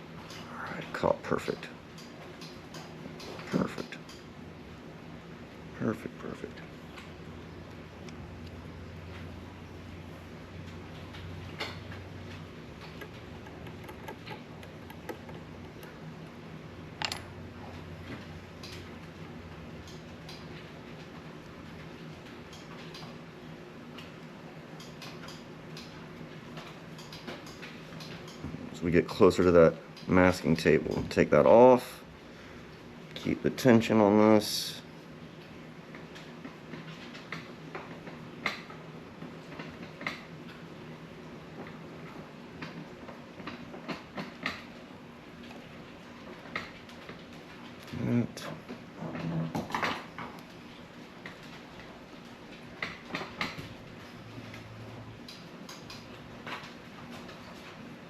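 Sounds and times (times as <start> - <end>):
low motor hum: 6.4 - 18.6.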